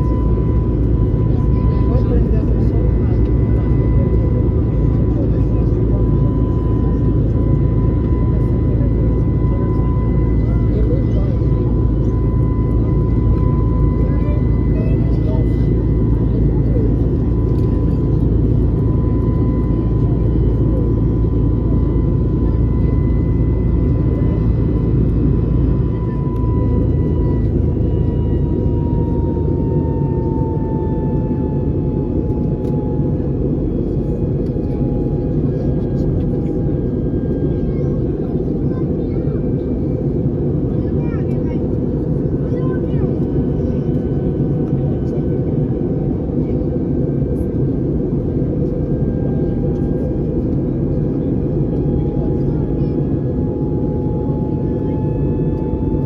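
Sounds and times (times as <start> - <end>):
aircraft engine and airflow rush: 0.0 - 56.0.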